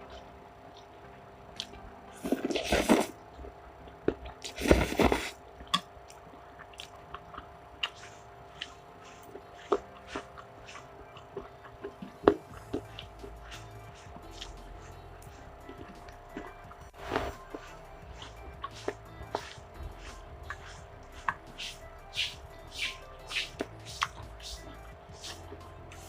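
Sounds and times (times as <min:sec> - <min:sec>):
soft chewing: 0:00.0 - 0:26.0
wet mouth clicks: 0:05.7 - 0:13.1.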